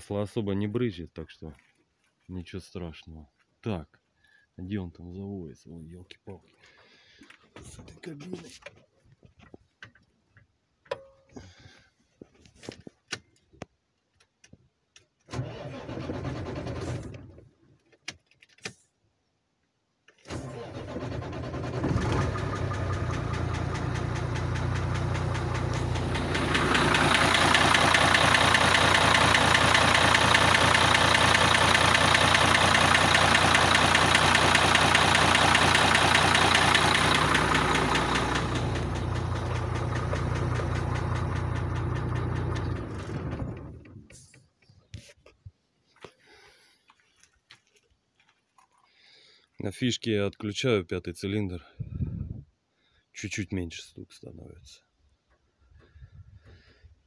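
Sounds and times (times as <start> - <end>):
diesel engine cranking: 15.3 - 17.4, 20.2 - 44.4
engine revving: 20.4 - 43.8
diesel truck engine idling: 21.8 - 43.8.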